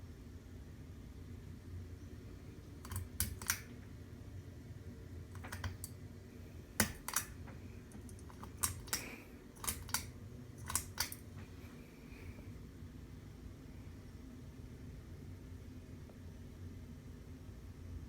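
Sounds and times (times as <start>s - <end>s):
low steady hum: 0.0s - 18.0s
pull-chain switch clicking: 2.8s - 3.7s, 5.4s - 6.0s, 6.8s - 11.3s.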